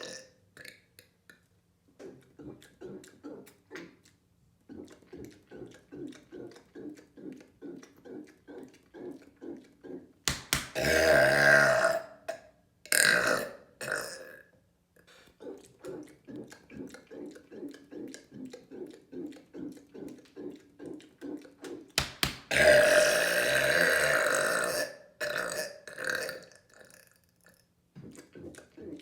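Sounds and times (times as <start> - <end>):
man burping: 10.8 - 12.1, 12.9 - 14.4, 22.5 - 26.5.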